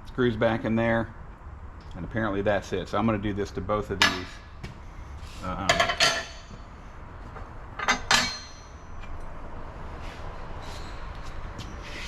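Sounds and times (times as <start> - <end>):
low background hum: 0.0 - 12.0
metal tools clinking together: 5.7 - 6.4, 7.8 - 9.2.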